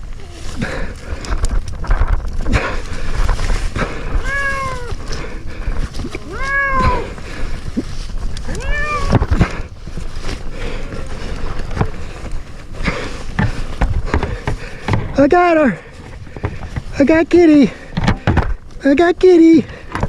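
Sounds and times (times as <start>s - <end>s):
constant rustling: 0.0s - 18.9s
cat meowing: 2.6s - 12.4s.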